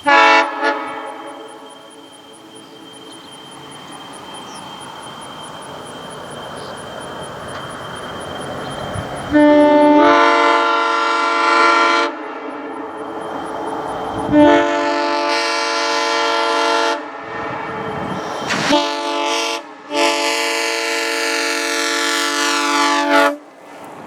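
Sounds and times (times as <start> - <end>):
locomotive air horn blasts: 0.0 - 3.2, 8.8 - 17.5, 18.5 - 23.4
air hiss: 17.4 - 19.4.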